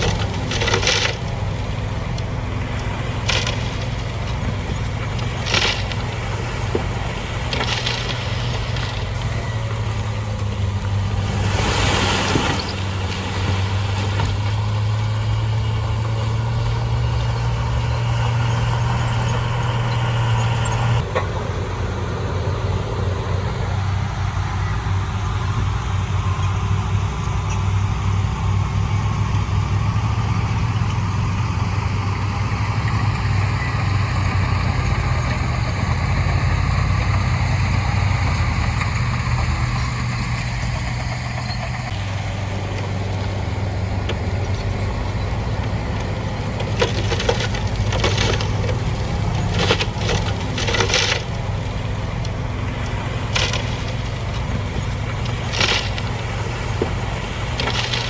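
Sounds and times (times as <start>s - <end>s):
rock and gravel clattering: 0.0s - 21.3s, 24.6s - 58.0s
heavy diesel engine running: 0.0s - 58.0s.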